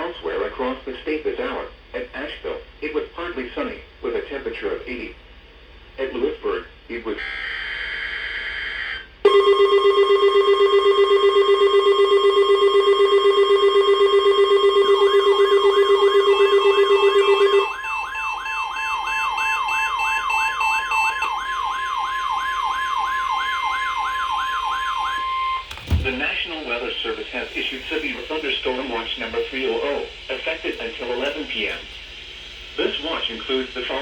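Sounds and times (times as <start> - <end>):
steady warning alarm tone: 9.3 - 32.5
warbling siren-like tone: 13.4 - 25.6.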